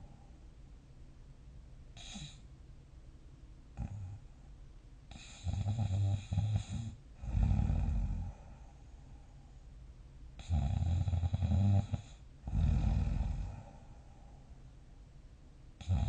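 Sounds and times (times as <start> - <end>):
person snoring: 2.0 - 2.4, 5.1 - 8.6, 10.4 - 13.9, 15.8 - 16.0.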